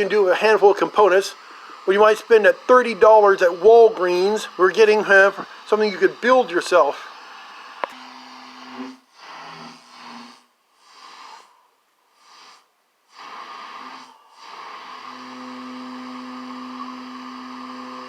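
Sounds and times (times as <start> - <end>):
radio static hissing: 0.0 - 8.0.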